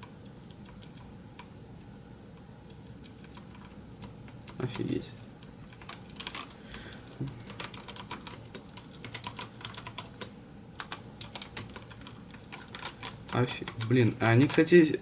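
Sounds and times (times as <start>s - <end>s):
mechanical keyboard clicks: 0.0s - 1.5s, 5.7s - 6.5s, 7.2s - 14.7s.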